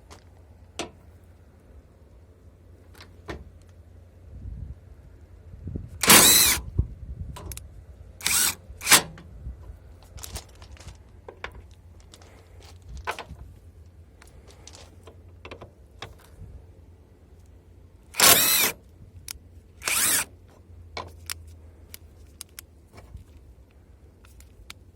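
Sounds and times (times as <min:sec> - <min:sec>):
impact wrench bursts: 0:06.0 - 0:06.6, 0:08.2 - 0:09.1, 0:18.1 - 0:18.8, 0:19.8 - 0:20.4.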